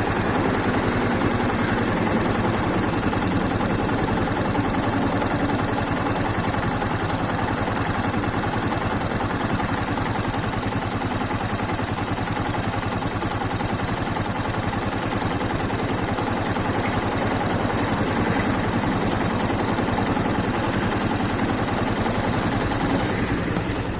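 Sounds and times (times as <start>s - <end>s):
motorcycle engine idling: 0.0s - 23.9s
valve train clatter: 0.0s - 23.9s.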